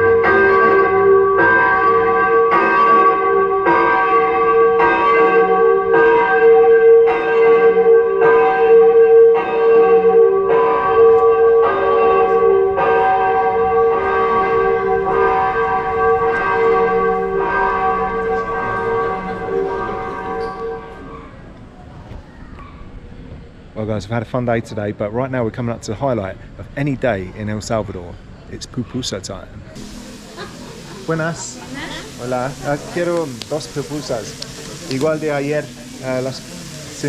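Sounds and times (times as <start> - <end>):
large bell tolling: 0.0 - 21.4, 29.8 - 36.5.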